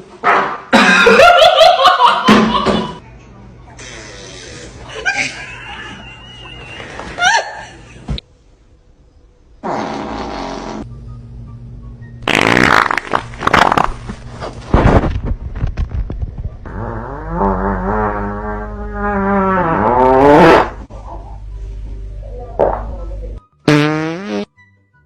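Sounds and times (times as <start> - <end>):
farting: 9.6 - 10.9, 12.2 - 14.0, 16.6 - 20.8, 23.7 - 24.5.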